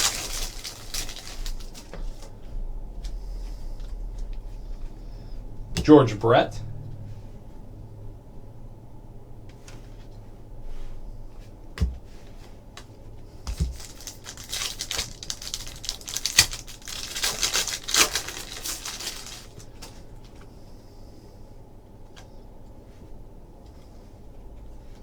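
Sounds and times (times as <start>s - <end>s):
wrapper tearing and crinkling: 0.0s - 2.3s, 13.5s - 20.0s.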